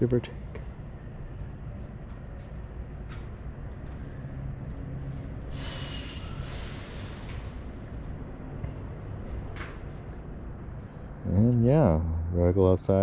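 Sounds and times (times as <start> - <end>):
distant traffic: 0.0 - 13.0
brief hiss: 5.5 - 7.6.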